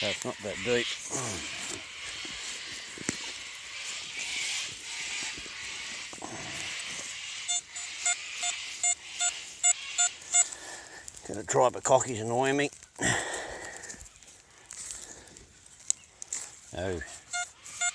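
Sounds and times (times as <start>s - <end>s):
metal detector beeping: 7.3s - 10.6s, 17.3s - 17.9s.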